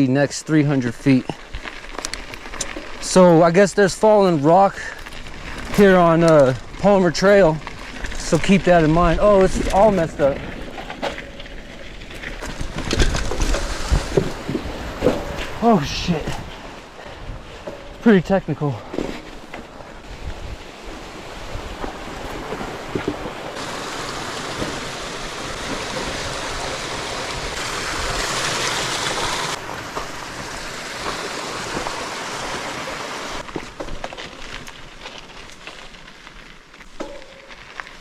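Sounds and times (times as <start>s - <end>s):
rushing water: 13.7s - 17.0s, 20.1s - 33.5s.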